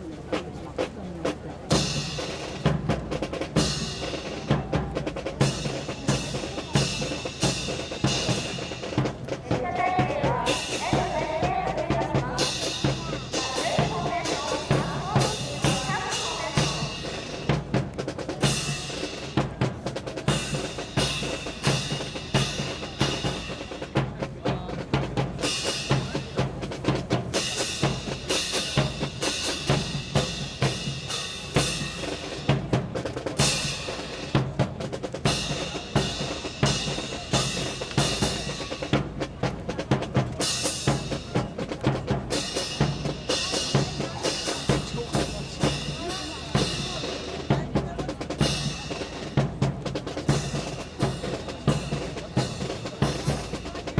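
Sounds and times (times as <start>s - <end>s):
marching drum beat: 0.0s - 53.9s.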